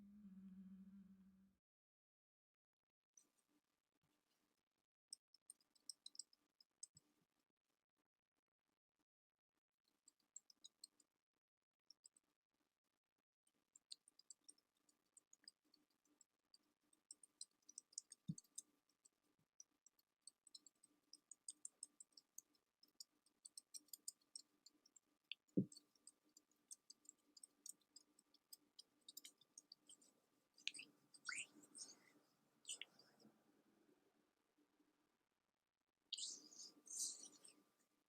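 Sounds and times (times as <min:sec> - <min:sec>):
faint crackling clicks: 0:20.2 - 0:33.3.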